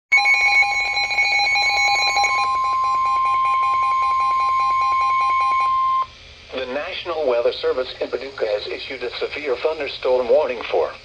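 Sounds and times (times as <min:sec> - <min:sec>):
rapidly pulsing beep: 0:00.1 - 0:06.1
steady high alarm tone: 0:00.1 - 0:06.2.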